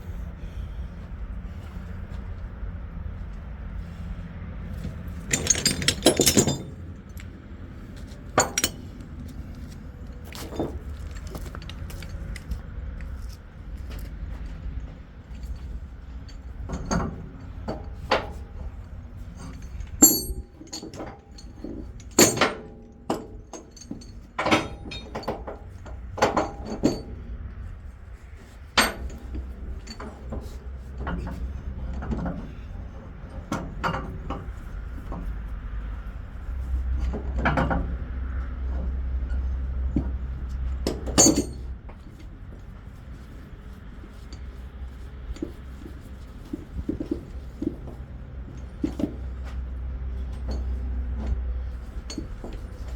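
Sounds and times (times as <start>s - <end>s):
steady low rumble: 0.0s - 52.9s
metal chains clanking: 4.8s - 7.2s, 8.3s - 9.1s, 10.0s - 12.6s, 15.3s - 27.2s, 39.2s - 42.2s.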